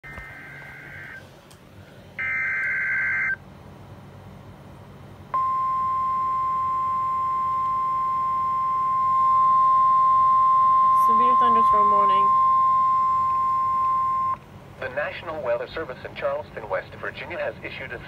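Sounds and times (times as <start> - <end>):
steady warning alarm tone: 0.0 - 1.2, 2.2 - 3.4, 5.4 - 14.4
screeching digital data bursts: 0.1 - 1.2.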